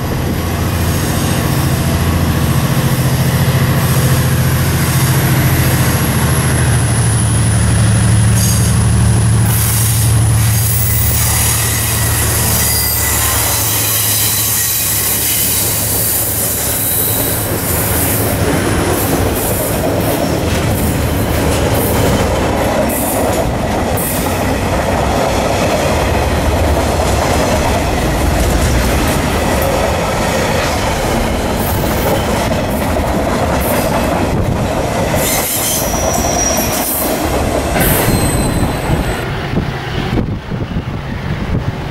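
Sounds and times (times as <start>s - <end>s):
train wheels clicking over rail joints: 8.1s - 39.2s
high-pitched wheel squeal: 8.3s - 8.9s, 9.5s - 17.3s, 35.2s - 37.2s, 37.8s - 39.2s.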